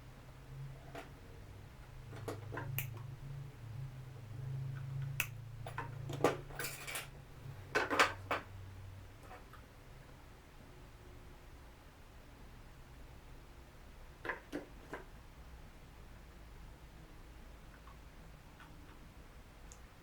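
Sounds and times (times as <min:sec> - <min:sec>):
low steady hum: 0:00.0 - 0:14.3
metal tools clicking and tapping: 0:05.0 - 0:07.1.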